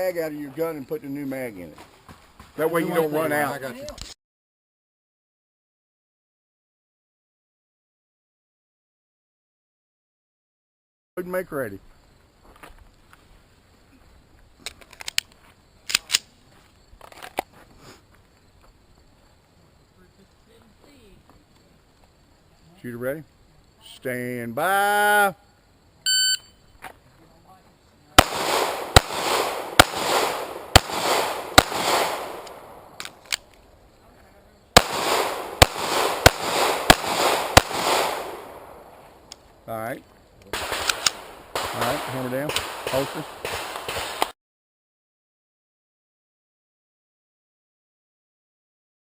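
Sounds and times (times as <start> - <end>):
pistol clicks and clacks: 14.6 - 16.3, 32.3 - 33.6, 40.8 - 41.2
pistol shots with echo: 28.2 - 33.2, 34.8 - 39.0, 40.5 - 44.3.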